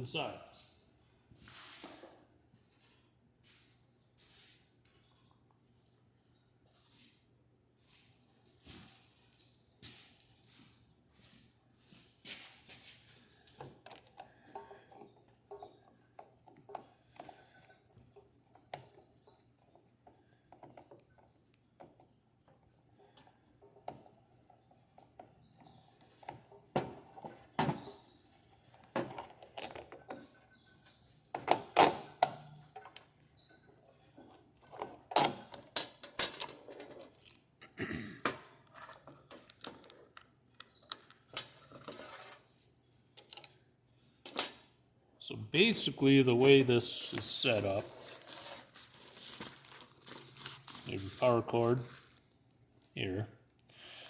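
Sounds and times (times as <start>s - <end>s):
plastic parts clicking and knocking: 28.6s - 30.4s, 31.4s - 37.5s, 38.2s - 42.0s, 43.2s - 43.6s, 44.3s - 44.6s.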